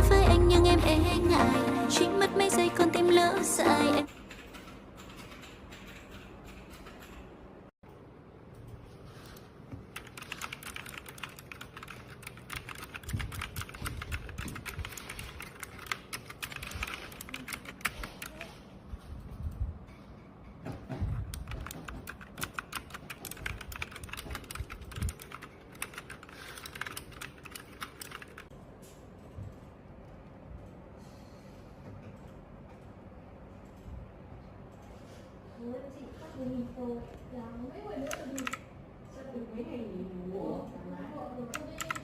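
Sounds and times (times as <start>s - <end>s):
fast typing on mechanical keyboard: 4.1s - 7.3s, 9.8s - 18.6s, 21.2s - 28.5s, 38.0s - 38.7s, 41.5s - 42.0s.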